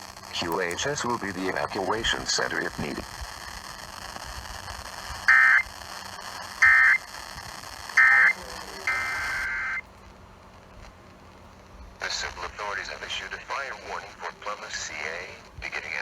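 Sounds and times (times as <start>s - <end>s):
steady tone: 4.8s - 9.9s
digital warbles: 8.0s - 9.8s.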